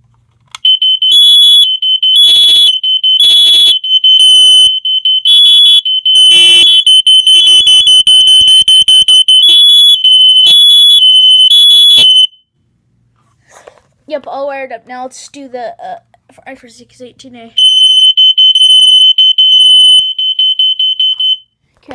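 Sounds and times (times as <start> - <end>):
smoke alarms beeping: 0.6 - 12.5, 17.6 - 21.5.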